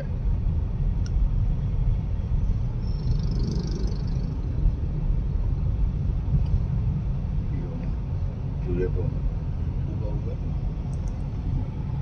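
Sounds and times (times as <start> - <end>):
steady low rumble: 0.0 - 12.0.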